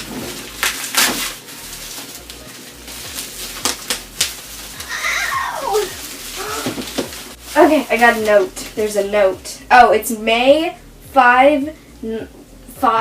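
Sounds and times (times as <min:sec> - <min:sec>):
wrapping crinkling and crackling: 0:00.0 - 0:09.3.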